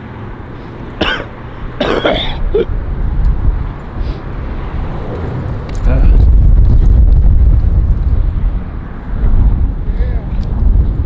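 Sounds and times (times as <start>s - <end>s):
wind rumbling on microphone: 0.0s - 11.0s
person clearing throat: 1.0s - 2.7s.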